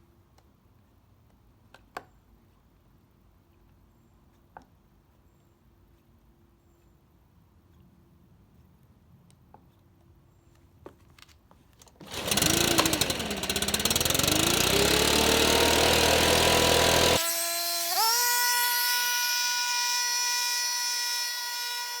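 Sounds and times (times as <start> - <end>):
leaf blower engine revving: 12.0 - 22.0.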